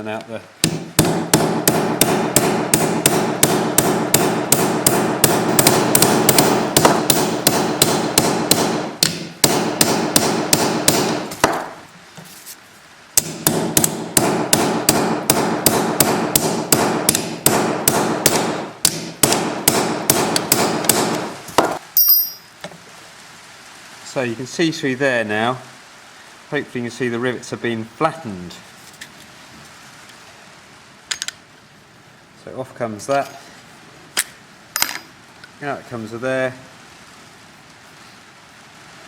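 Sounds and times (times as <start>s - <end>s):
hammer striking riveting punch: 0.6s - 11.8s, 13.2s - 21.8s
metal ringing: 22.0s - 22.5s.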